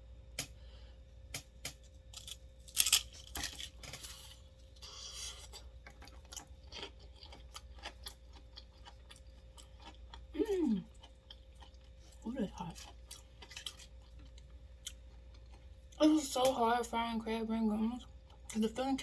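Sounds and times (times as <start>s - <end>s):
chip crunching and chewing: 1.3s - 16.0s
person humming mm: 10.4s - 10.9s.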